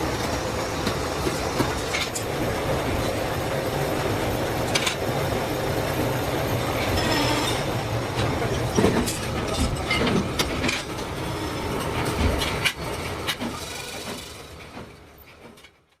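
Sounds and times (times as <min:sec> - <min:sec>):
knocks and clanks: 0:06.8 - 0:11.1, 0:11.7 - 0:15.8.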